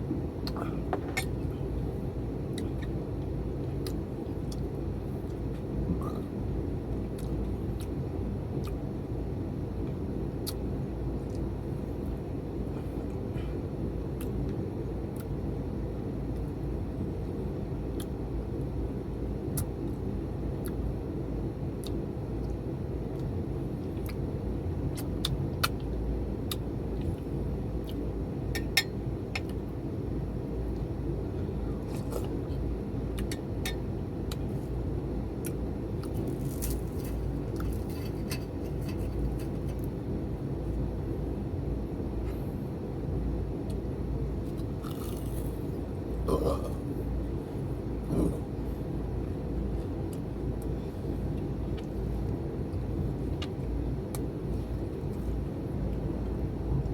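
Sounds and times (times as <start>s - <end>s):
low background rumble: 0.0s - 56.9s
crunching crispy food: 36.0s - 39.9s, 44.8s - 45.6s.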